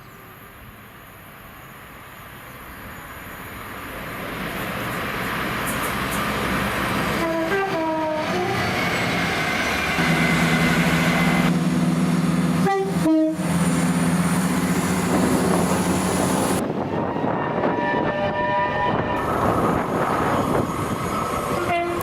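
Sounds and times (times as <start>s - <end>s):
train passing with rumble: 0.0s - 22.0s
two-tone train horn: 7.1s - 8.7s, 12.5s - 13.6s, 17.3s - 19.2s, 21.5s - 22.0s.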